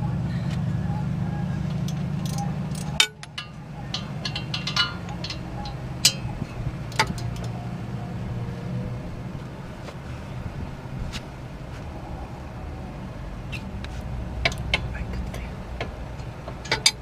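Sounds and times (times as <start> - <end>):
steady low hum: 0.0 - 17.0
hand tools clicking on metal: 1.8 - 6.3.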